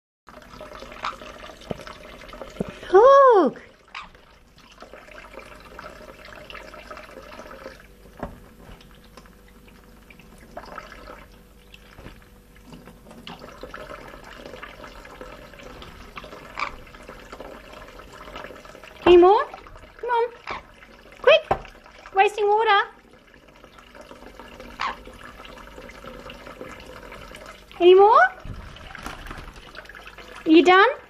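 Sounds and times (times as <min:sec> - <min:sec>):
bird bathing splashes: 0:00.3 - 0:02.9, 0:03.6 - 0:31.0
tap water splashing: 0:00.7 - 0:02.9, 0:03.9 - 0:22.2, 0:28.4 - 0:30.4.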